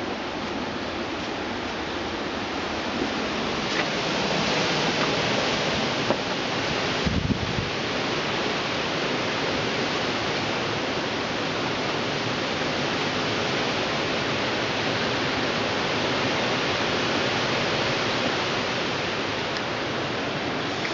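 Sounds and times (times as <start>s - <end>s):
strong wind rushing: 6.8s - 7.8s.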